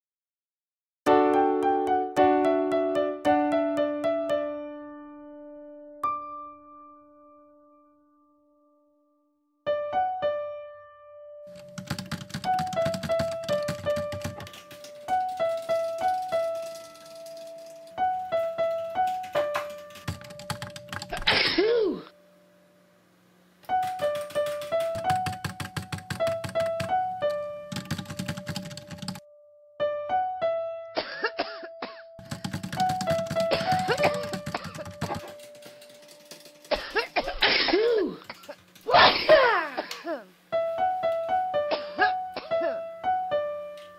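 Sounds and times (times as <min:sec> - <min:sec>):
light electric piano music: 0:01.1 - 0:07.9, 0:09.7 - 0:21.3, 0:23.6 - 0:37.2, 0:40.5 - 0:43.9
fast typing on computer keyboard: 0:11.5 - 0:21.4, 0:23.7 - 0:29.2, 0:32.2 - 0:37.2, 0:38.1 - 0:39.0.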